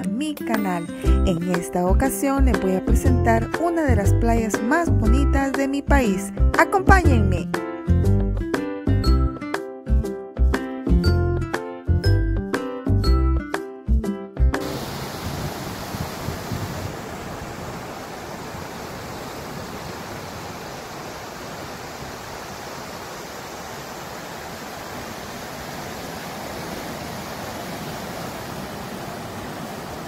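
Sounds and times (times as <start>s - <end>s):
ocean surf washing on beach: 14.6s - 30.0s.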